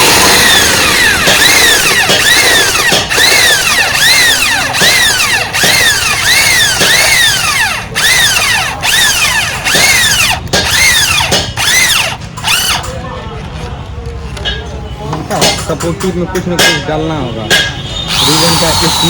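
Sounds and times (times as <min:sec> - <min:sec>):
electric drill whining: 0:00.0 - 0:12.9, 0:18.1 - 0:19.0.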